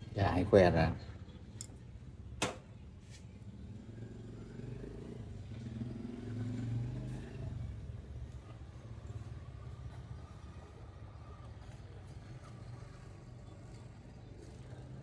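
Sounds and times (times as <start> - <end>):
vehicle engine rumbling past: 3.6 - 9.8.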